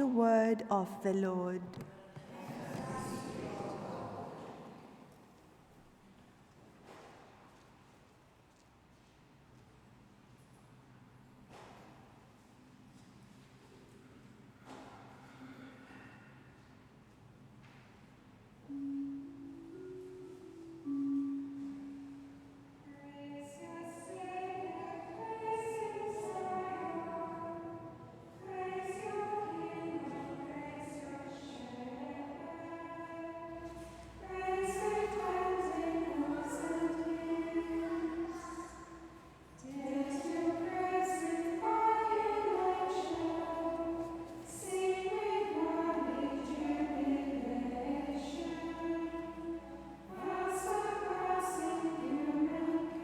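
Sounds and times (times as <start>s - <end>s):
choir of women singing a chant: 2.2s - 4.8s, 23.0s - 53.0s.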